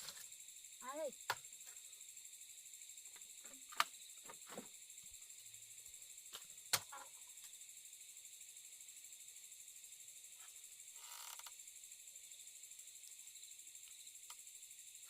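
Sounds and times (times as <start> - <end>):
night insects chirring: 0.0 - 15.0
faint ticks: 10.4 - 11.6, 12.8 - 13.2, 13.8 - 14.5.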